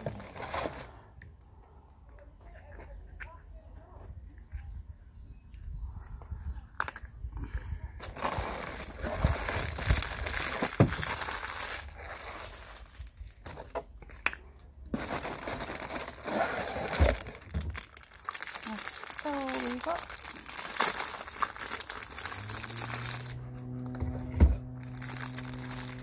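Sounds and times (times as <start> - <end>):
crinkling and rustling: 0.0 - 1.4, 8.0 - 26.0
low rumble: 20.1 - 26.0.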